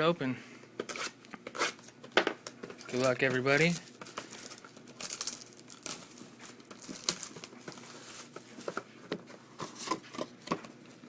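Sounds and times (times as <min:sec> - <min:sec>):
plastic shrink wrap crinkling: 0:02.7 - 0:08.4.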